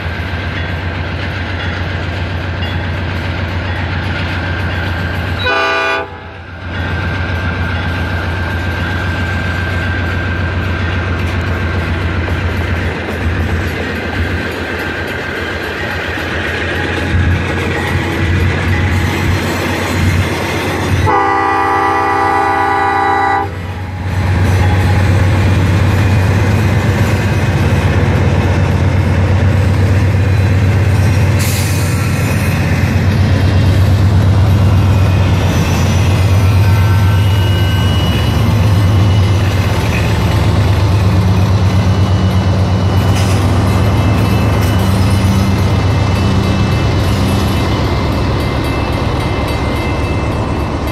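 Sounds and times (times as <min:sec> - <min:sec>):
train rumbling on rails: 0:00.0 - 0:50.9
train horn blast: 0:05.4 - 0:06.4, 0:21.0 - 0:23.6.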